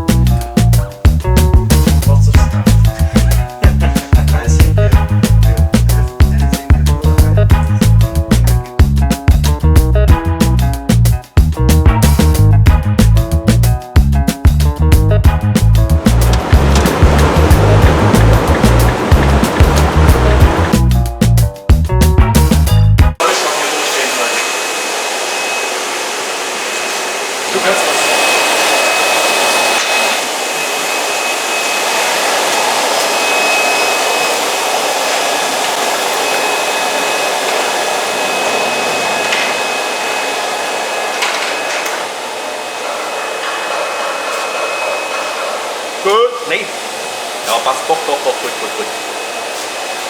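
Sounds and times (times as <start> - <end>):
air blower rushing: 0.0 - 8.8, 15.6 - 21.0, 23.2 - 50.0
faint high whistle: 27.9 - 35.1.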